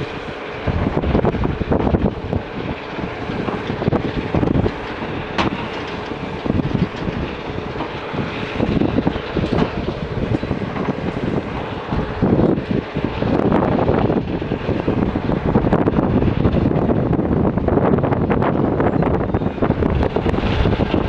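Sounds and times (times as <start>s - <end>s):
diesel engine running: 0.0s - 21.0s
wind buffeting microphone: 0.0s - 21.0s
machine knocks and rattles: 0.6s - 17.0s.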